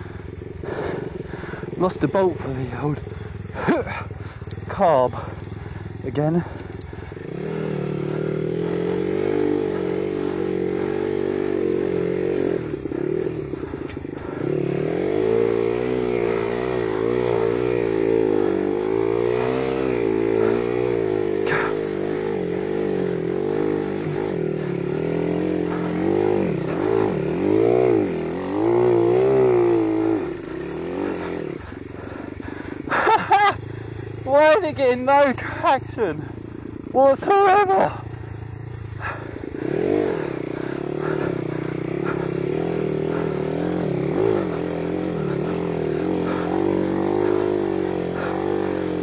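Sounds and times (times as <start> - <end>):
motorbike engine revving: 0.0 - 49.0.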